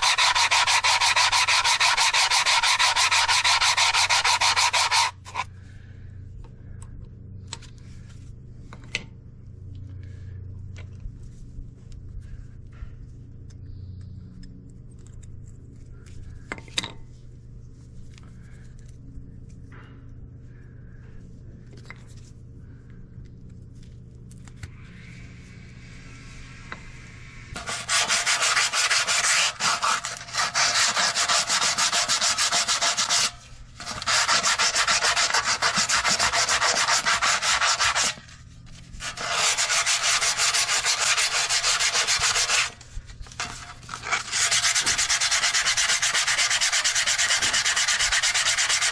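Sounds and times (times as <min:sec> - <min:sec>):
abrasive scrubbing or sanding: 0:00.0 - 0:05.4, 0:27.6 - 0:38.4, 0:39.0 - 0:42.8, 0:43.4 - 0:48.9
faint low hum: 0:00.4 - 0:27.7.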